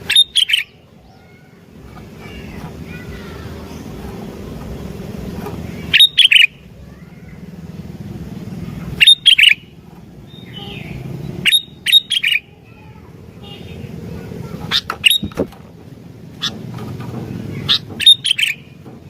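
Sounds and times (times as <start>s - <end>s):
bulbul singing: 0.0s - 19.0s
low background rumble: 0.0s - 19.0s.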